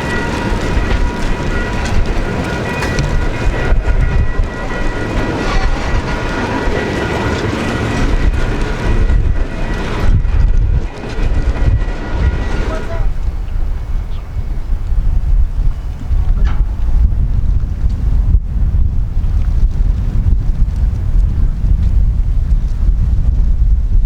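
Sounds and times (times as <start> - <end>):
train wheels clacking: 0.0 - 17.2
train rumble: 0.0 - 24.0.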